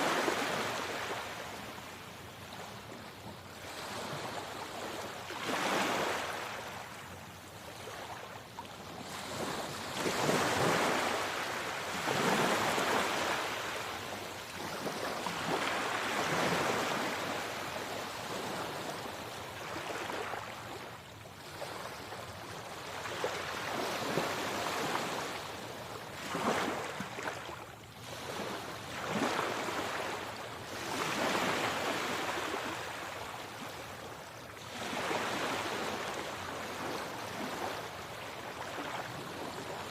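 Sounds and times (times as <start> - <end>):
sea waves surging: 0.0 - 1.8.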